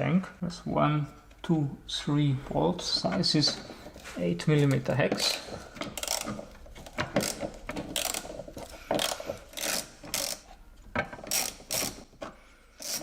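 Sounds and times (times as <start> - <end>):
socket ratchet clicking: 5.2 - 10.5, 11.2 - 12.1, 12.8 - 13.0.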